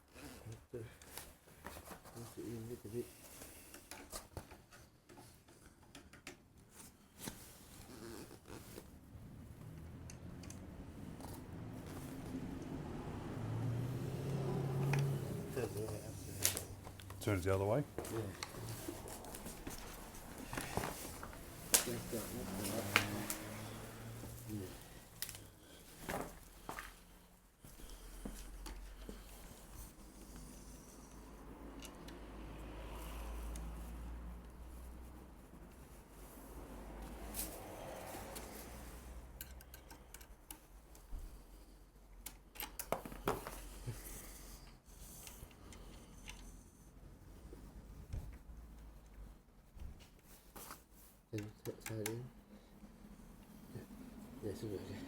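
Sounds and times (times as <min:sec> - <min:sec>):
light clicks and taps of tools: 0:03.3 - 0:07.4, 0:09.5 - 0:11.5, 0:14.3 - 0:17.2, 0:25.2 - 0:25.5, 0:27.7 - 0:32.7, 0:33.4 - 0:34.6, 0:38.2 - 0:41.5, 0:42.1 - 0:44.0, 0:44.6 - 0:46.8, 0:48.1 - 0:52.4
hand tools clicking and scraping: 0:14.8 - 0:17.3, 0:18.0 - 0:26.8, 0:39.3 - 0:40.7.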